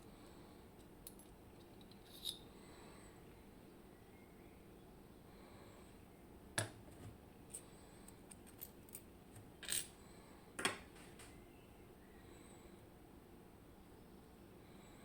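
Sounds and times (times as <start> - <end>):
small metal parts clicking: 0.8 - 2.4, 7.5 - 9.0, 9.6 - 9.9
metal parts clattering: 1.1 - 2.4.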